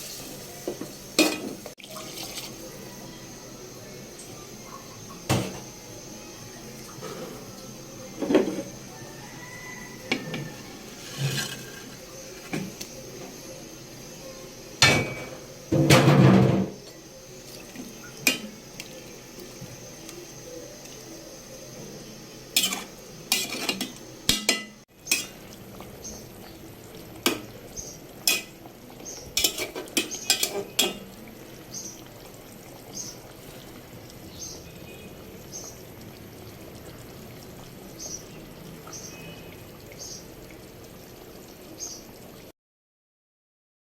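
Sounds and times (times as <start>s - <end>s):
metal utensils clattering on pots: 1.2s - 1.6s, 10.1s - 12.0s, 14.8s - 16.8s, 22.6s - 25.4s, 28.2s - 28.6s, 29.4s - 31.1s.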